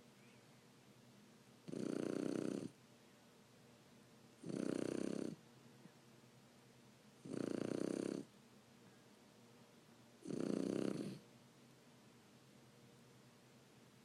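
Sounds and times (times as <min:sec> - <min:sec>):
puppy snoring: 0:01.6 - 0:02.8, 0:04.4 - 0:05.4, 0:07.2 - 0:08.3, 0:10.2 - 0:11.2
quiet breathing: 0:08.7 - 0:09.3.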